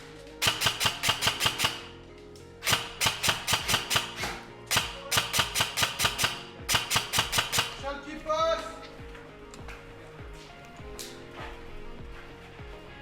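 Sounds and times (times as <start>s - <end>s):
background music: 0.0s - 13.0s
airsoft gun firing bursts: 0.4s - 2.0s, 2.6s - 8.0s.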